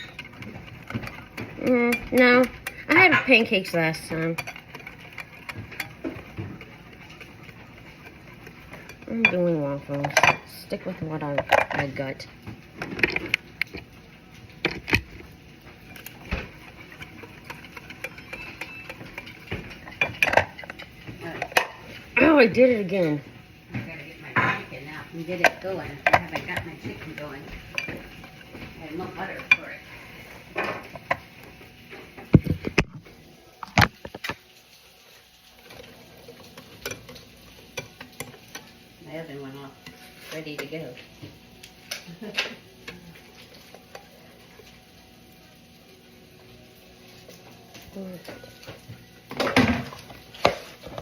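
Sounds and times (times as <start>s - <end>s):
utensils and dishes knocking: 0.0s - 12.1s, 15.8s - 22.3s, 25.3s - 29.8s.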